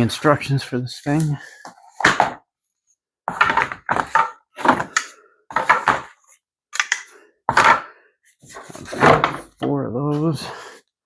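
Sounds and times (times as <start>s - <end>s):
hard plastic parts clattering: 3.3s - 7.9s, 8.5s - 10.4s.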